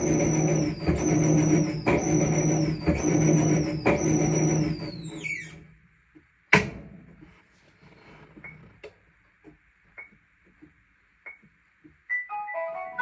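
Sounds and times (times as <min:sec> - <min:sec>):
washer high squeal: 0:00.0 - 0:05.6.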